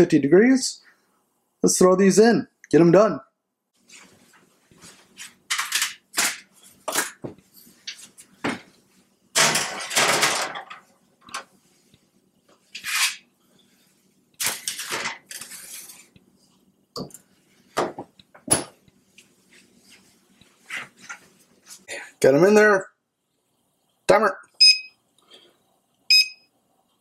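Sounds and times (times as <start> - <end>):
metal baking sheets clanking: 9.4 - 10.8.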